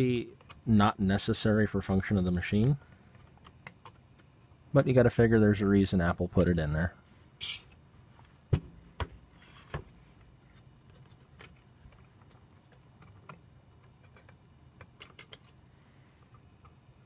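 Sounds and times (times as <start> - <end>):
small parts clicking and tapping: 10.6 - 15.6.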